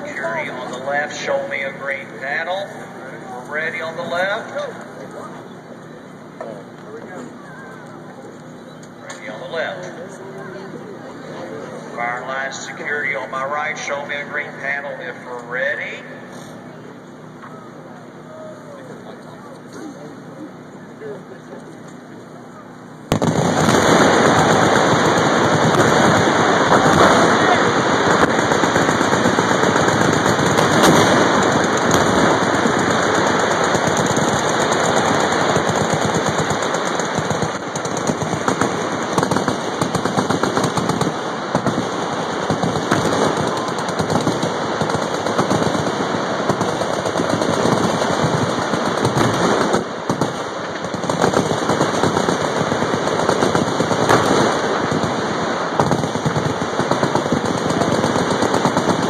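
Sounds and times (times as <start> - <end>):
machine guns firing: 22.8 - 59.0.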